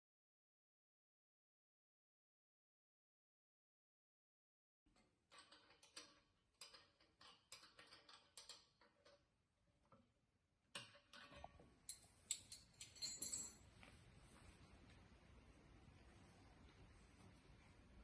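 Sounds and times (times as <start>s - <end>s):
faint steady hiss: 13.6s - 18.0s.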